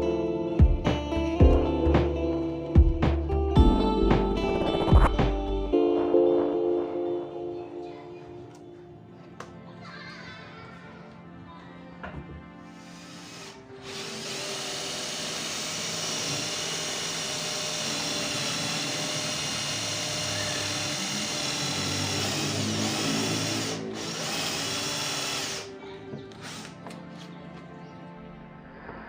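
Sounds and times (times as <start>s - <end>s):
electric drill boring into wood: 12.8s - 26.8s.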